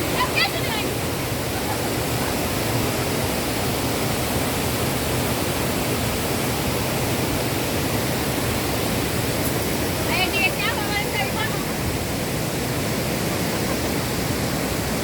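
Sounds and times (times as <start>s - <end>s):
waterfall roaring: 0.0s - 15.0s.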